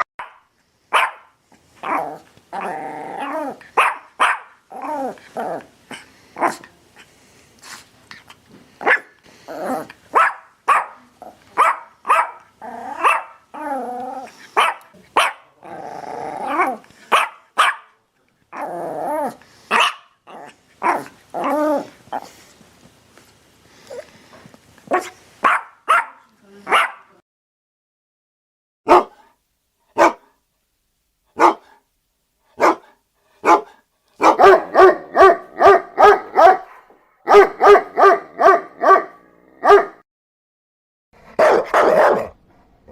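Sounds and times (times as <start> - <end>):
dog barking: 0.0 - 2.0, 3.8 - 4.6, 6.4 - 6.6, 8.8 - 9.1, 10.1 - 13.4, 14.6 - 15.6, 17.1 - 18.0, 19.7 - 20.2, 20.8 - 21.1, 24.9 - 27.1, 28.9 - 29.3, 30.0 - 30.4, 31.4 - 31.8, 32.6 - 40.0, 41.3 - 42.4
dog growling: 1.8 - 3.7, 4.7 - 6.8, 9.3 - 10.0, 12.5 - 17.0, 18.5 - 19.6, 20.3 - 22.4.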